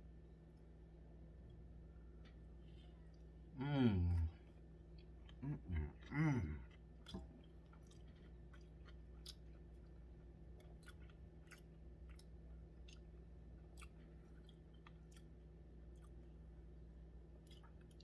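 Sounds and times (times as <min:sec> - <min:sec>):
close-up chewing: 0:04.2 - 0:16.4, 0:17.4 - 0:18.0.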